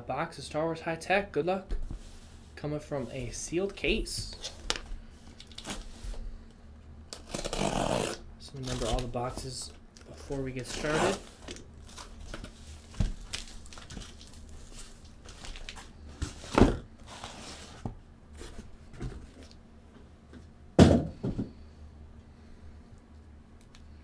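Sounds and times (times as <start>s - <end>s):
cardboard boxes shuffling: 10.8s - 19.6s
boxes thunking on table: 20.8s - 21.6s.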